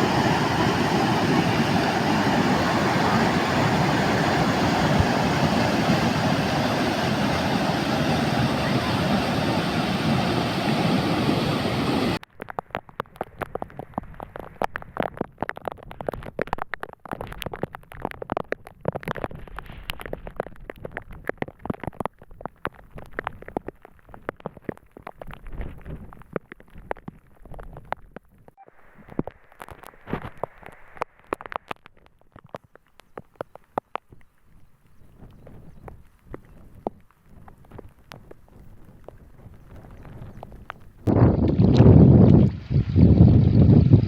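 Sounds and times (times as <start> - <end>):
heavy rain and running water: 0.0 - 12.2
raindrops pattering on a surface: 12.2 - 41.9.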